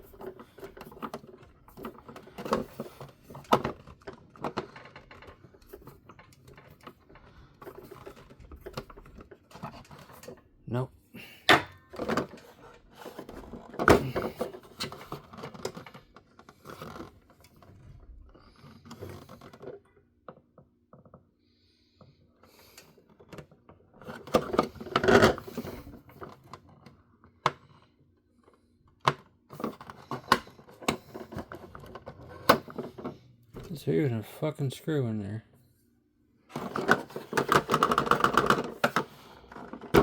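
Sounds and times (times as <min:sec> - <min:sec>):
plastic toy clicking and rattling: 0:36.5 - 0:40.0.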